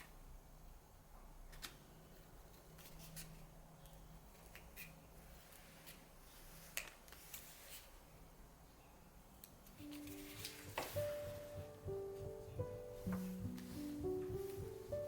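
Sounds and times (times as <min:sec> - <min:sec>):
small clicks and handling noises: 0:01.4 - 0:07.5.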